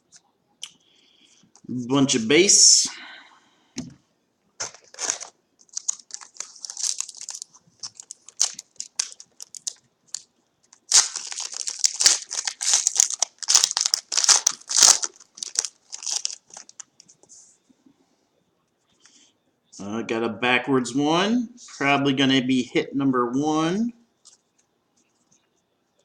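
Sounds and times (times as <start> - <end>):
cards being handled: 4.6 - 10.2
wrapper crinkling and tearing: 4.6 - 16.9.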